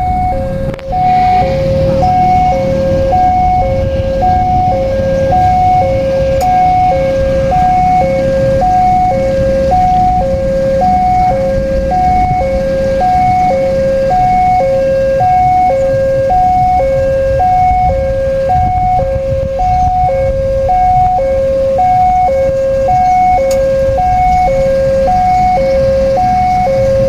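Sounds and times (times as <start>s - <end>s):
level crossing two-tone alarm: 0.0s - 27.0s
steady low rumble: 0.0s - 27.0s.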